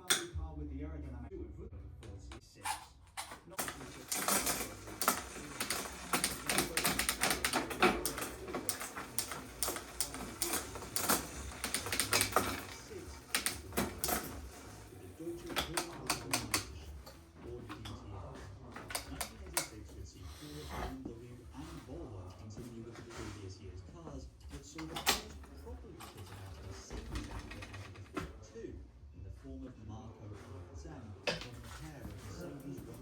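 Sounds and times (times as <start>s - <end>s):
mechanical clicking and rattling: 2.7s - 18.0s, 18.6s - 20.1s, 24.6s - 28.3s.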